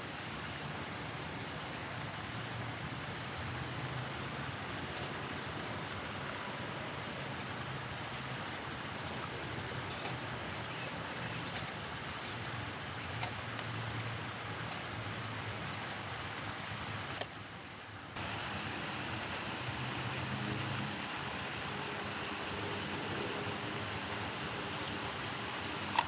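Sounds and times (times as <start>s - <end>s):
light rain hissing: 18.1s - 26.0s.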